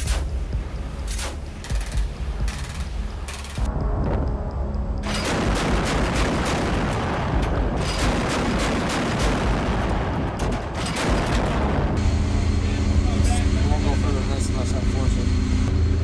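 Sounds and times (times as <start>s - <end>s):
chain gun firing rapid bursts: 0.0s - 3.7s.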